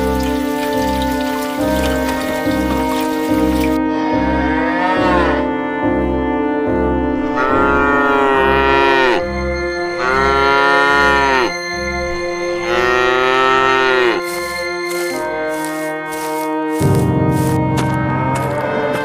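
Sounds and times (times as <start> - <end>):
background music: 0.0 - 19.0
cow mooing: 3.8 - 5.6, 7.2 - 11.6, 12.5 - 14.4.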